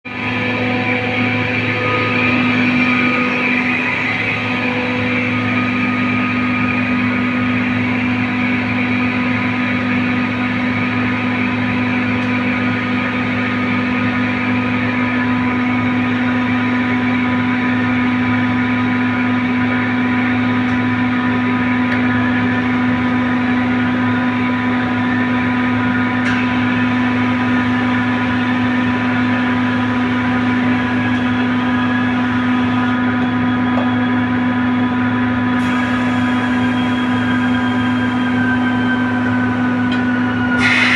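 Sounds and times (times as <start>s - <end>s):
compressor humming: 0.1s - 40.9s.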